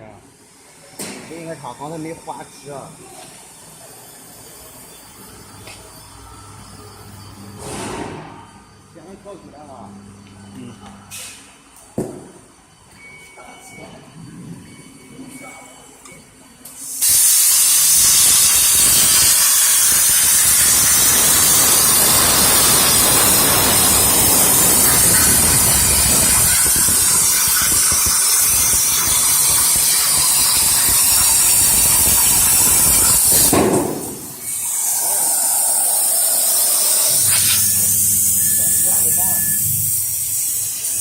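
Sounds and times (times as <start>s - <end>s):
plasma cutter arc hissing: 16.7s - 41.0s.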